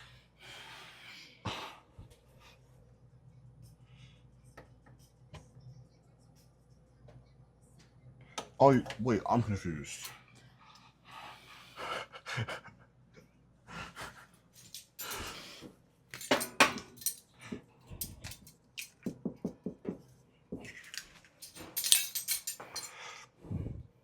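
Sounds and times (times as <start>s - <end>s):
utensils clicking and clinking: 14.6s - 15.6s, 16.2s - 17.3s, 17.9s - 19.2s, 20.7s - 23.0s.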